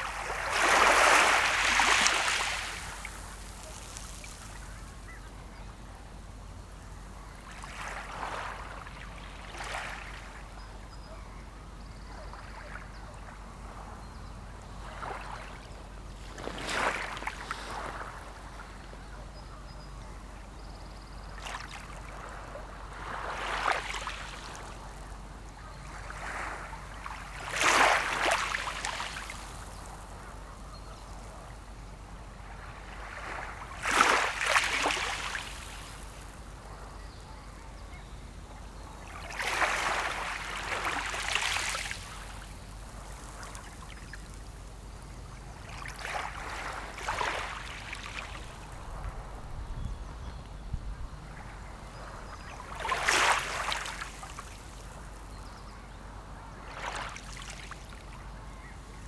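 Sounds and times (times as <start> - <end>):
small waves washing onto shore: 0.0 - 5.2, 14.9 - 18.9, 21.4 - 36.9, 38.9 - 49.6, 51.3 - 55.4.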